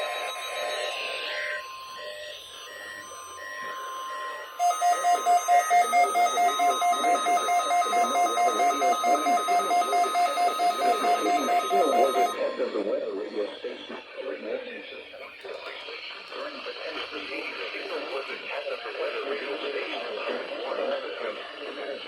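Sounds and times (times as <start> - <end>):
steady electronic tone: 0.0 - 12.4
alarm beeping: 0.0 - 12.8.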